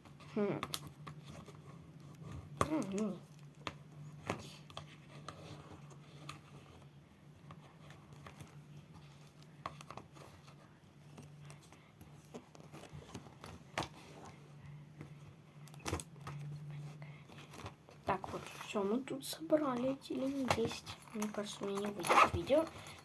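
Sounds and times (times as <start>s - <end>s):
plastic pens clicking and rustling: 17.3s - 23.0s.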